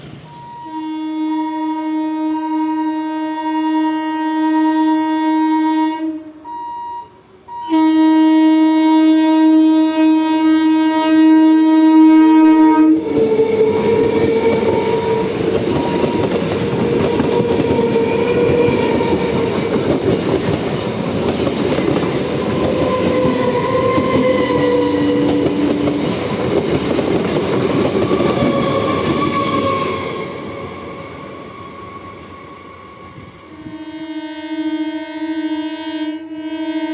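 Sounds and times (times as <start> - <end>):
train wheels rumbling on rails: 0.0 - 1.3, 8.8 - 34.1
train air horn blasts: 0.3 - 20.8, 21.5 - 26.7, 27.3 - 36.9.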